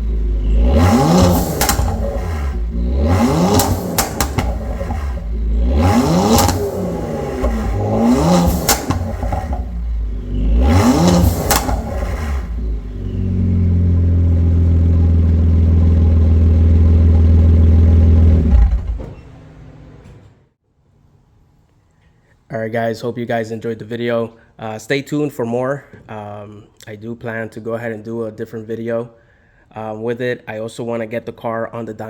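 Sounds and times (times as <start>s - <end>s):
car engine revving: 0.0s - 20.3s
exhaust crackles and pops: 0.0s - 20.3s.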